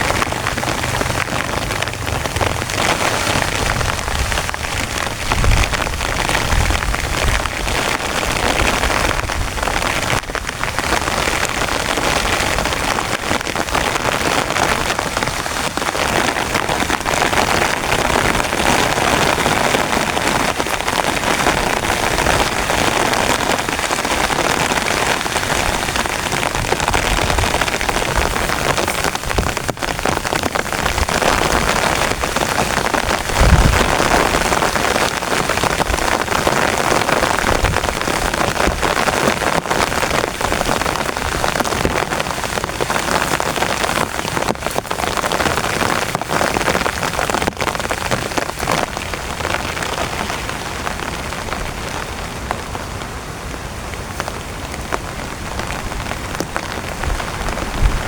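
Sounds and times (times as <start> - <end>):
heavy rain pelting a tent: 0.0 - 58.0
low rumbles: 33.0 - 34.5.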